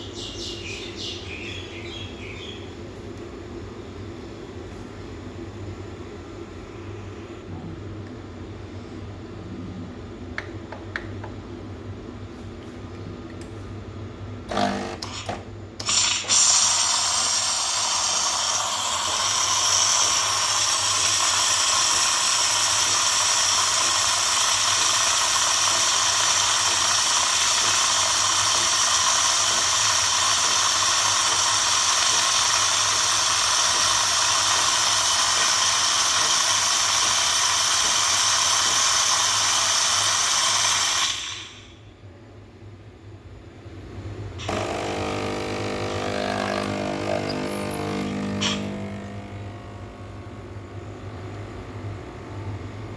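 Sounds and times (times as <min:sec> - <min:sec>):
steam wand hissing: 0:15.8 - 0:41.7, 0:44.4 - 0:49.1.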